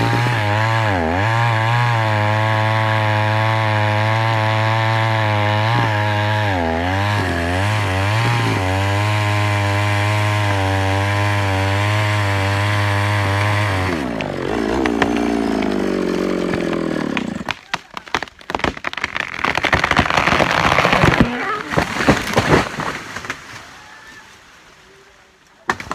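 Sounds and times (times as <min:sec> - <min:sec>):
chainsaw engine revving: 0:00.0 - 0:17.5, 0:20.0 - 0:22.8
sharp irregular cracks and clicks: 0:16.5 - 0:23.7.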